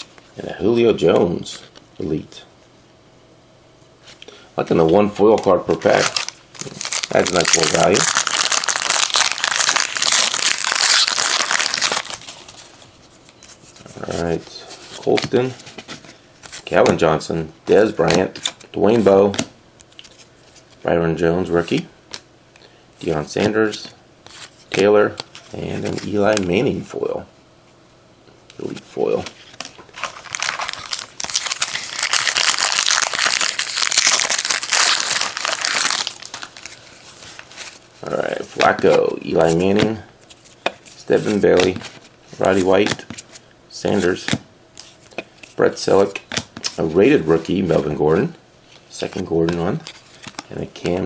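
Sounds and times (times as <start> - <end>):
wrapper crinkling as torn: 5.8 - 12.8, 29.5 - 37.8.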